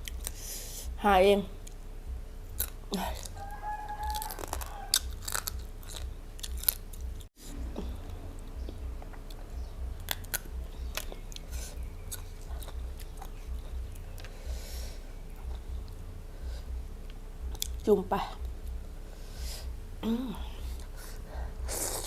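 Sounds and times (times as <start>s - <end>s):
person chewing crunchy food: 2.5s - 16.0s, 17.5s - 17.8s.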